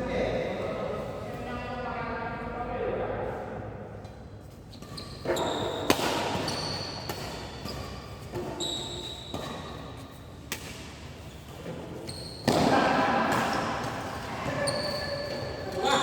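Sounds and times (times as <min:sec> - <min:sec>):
shoes squeaking on court floor: 0:04.4 - 0:16.0
rackets striking shuttlecock: 0:05.2 - 0:11.8.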